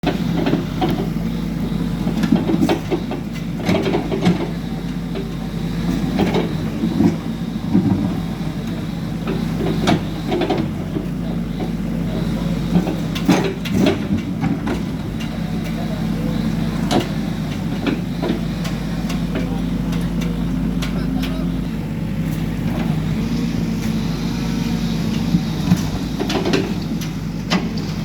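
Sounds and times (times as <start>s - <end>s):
excavator diesel engine running: 0.0s - 28.0s.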